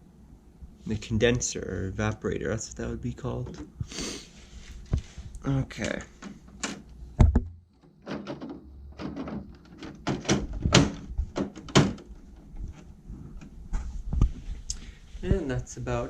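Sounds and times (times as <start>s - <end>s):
plastic cabinet clicks and knocks: 5.8s - 13.5s
heavy thump: 7.2s - 7.6s.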